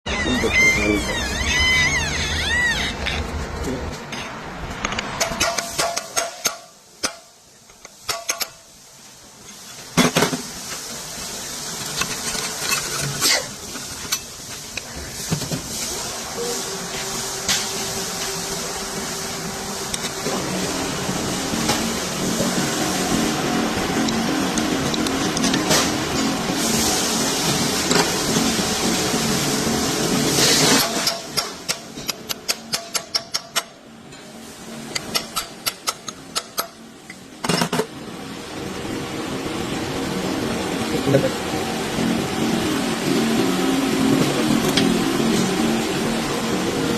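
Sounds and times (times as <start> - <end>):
machine hissing and humming: 3.7 - 46.9
metal parts clanking: 11.7 - 14.8.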